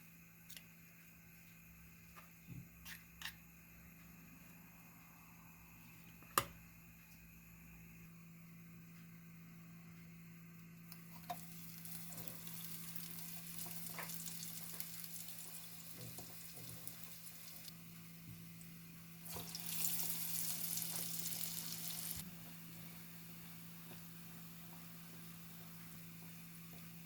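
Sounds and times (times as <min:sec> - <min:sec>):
steady low hum: 0:00.0 - 0:13.8
food frying in hot oil: 0:11.1 - 0:27.0.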